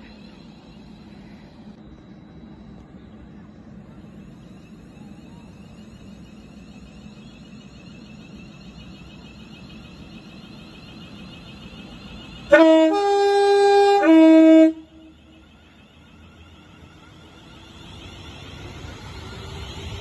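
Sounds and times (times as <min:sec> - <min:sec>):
steady low background noise: 0:00.0 - 0:12.6
two-tone train horn: 0:12.5 - 0:15.1.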